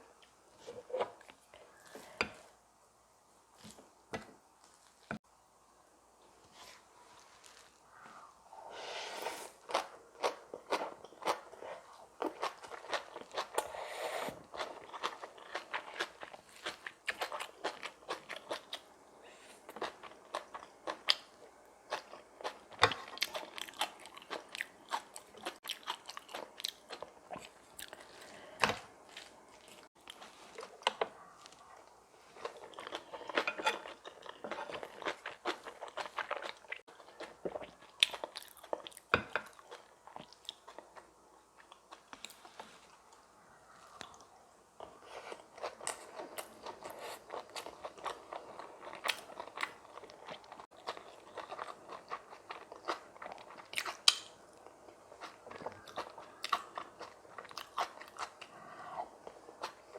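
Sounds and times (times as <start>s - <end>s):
person chewing crunchy food: 9.5s - 19.0s, 19.6s - 59.9s.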